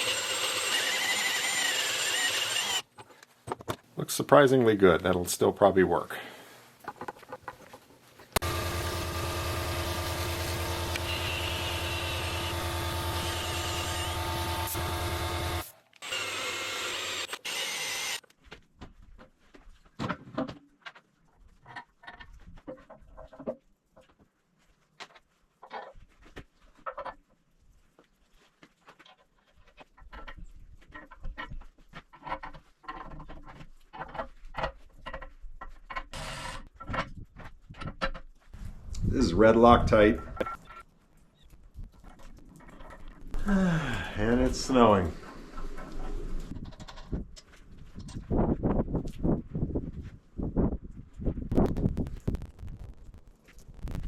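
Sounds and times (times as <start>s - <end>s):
handheld power tool running: 0.0s - 2.9s, 8.4s - 18.2s.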